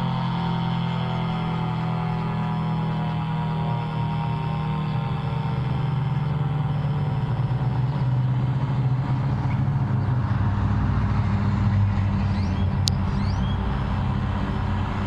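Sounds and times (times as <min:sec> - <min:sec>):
low rumble of road vehicles: 0:00.0 - 0:15.0
tornado siren tone: 0:11.4 - 0:15.0.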